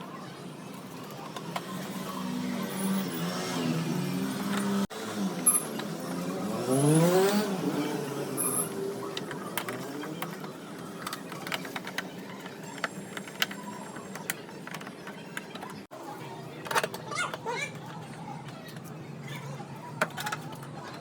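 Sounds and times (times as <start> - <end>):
engine revving: 1.6 - 10.4.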